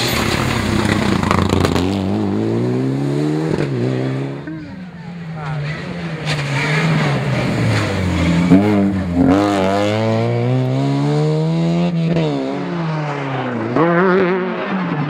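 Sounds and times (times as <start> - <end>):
rally car engine accelerating: 0.0 - 15.0.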